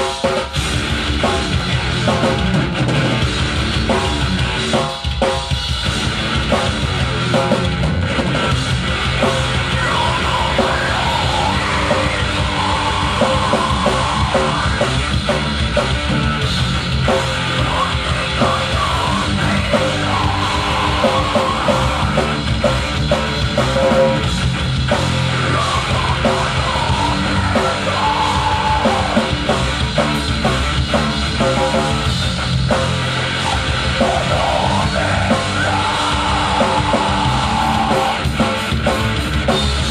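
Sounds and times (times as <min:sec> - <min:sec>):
drums: 0:00.0 - 0:39.9
heavy metal band playing live: 0:00.0 - 0:39.9
person yelling vocals: 0:09.7 - 0:14.8.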